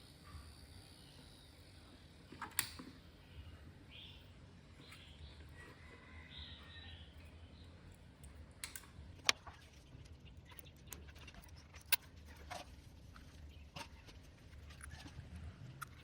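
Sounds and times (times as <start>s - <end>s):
sharp clicks and rattles: 10.3s - 12.1s.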